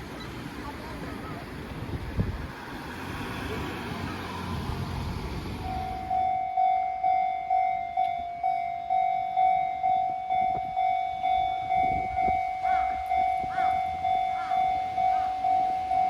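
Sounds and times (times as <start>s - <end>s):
level crossing warning bell: 5.6s - 16.0s.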